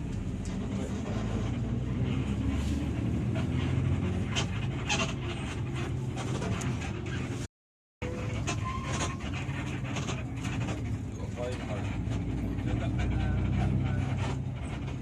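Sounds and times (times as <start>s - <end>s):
diesel bus engine rumbling: 0.0s - 15.0s.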